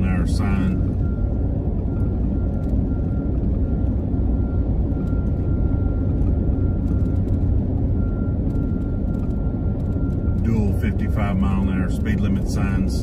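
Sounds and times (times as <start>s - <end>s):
car tyre and engine rumble: 0.0s - 13.0s.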